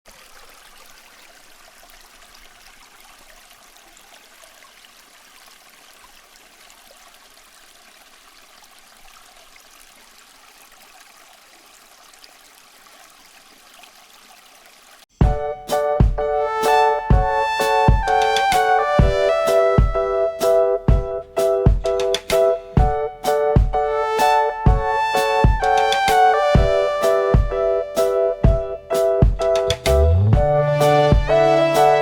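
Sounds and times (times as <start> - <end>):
fountain water trickling: 0.1 - 15.1.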